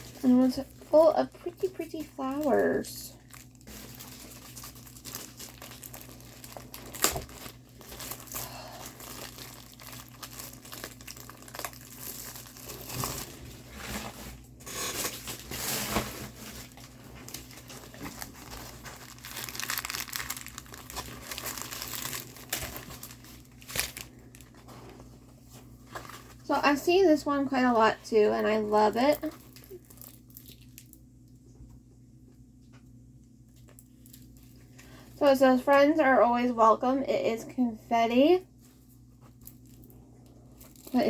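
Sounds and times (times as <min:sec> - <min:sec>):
plastic packaging crinkling: 0:00.0 - 0:26.8, 0:27.7 - 0:31.1, 0:33.6 - 0:35.0, 0:38.6 - 0:41.0.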